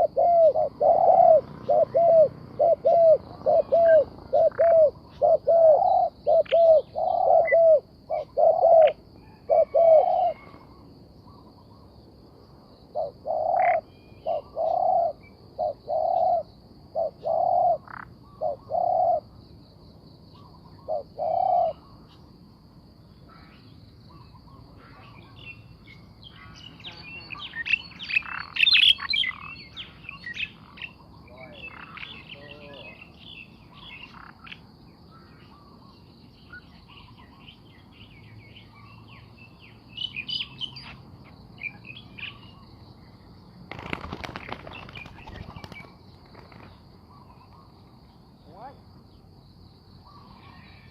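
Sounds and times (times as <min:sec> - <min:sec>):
dove cooing: 0:00.0 - 0:10.8, 0:12.9 - 0:19.3, 0:20.4 - 0:21.9, 0:31.3 - 0:33.1
high chirping: 0:23.7 - 0:34.6.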